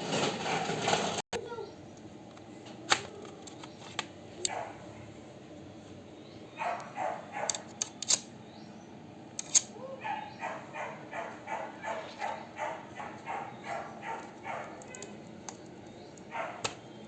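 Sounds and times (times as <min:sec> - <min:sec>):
dog barking: 0:04.5 - 0:04.9, 0:06.6 - 0:07.7, 0:09.9 - 0:15.2, 0:16.3 - 0:16.7
sharp clicks of hard parts: 0:07.4 - 0:08.3, 0:09.3 - 0:09.7, 0:14.2 - 0:16.9.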